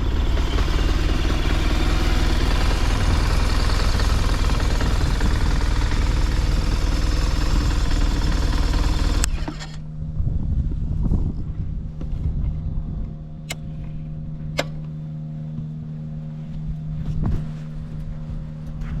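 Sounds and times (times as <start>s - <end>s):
motorcycle engine idling: 0.0s - 9.4s.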